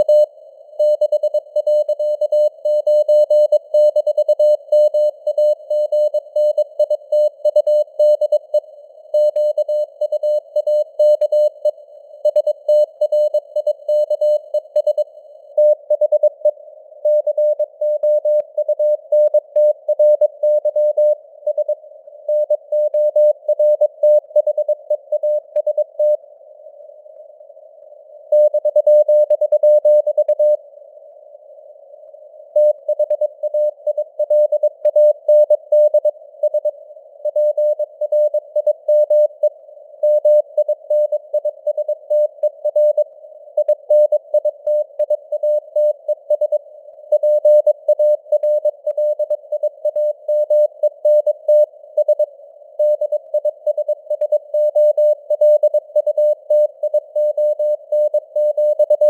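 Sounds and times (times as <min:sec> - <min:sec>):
morse code beeps: 0:47.2 - 0:59.0.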